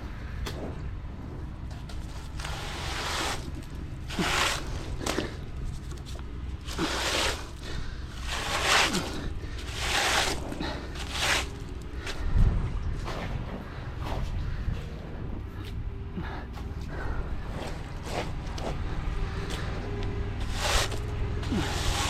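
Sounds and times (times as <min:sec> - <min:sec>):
low steady rumble: 0:00.0 - 0:22.0
wet concrete scraping swishes: 0:02.1 - 0:12.0, 0:20.4 - 0:22.0.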